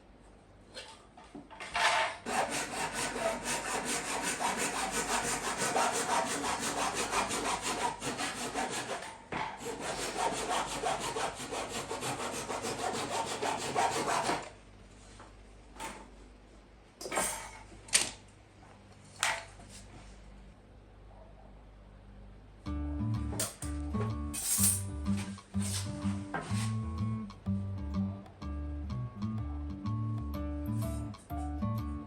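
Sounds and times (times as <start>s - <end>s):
handsaw cutting wood: 2.2s - 14.5s.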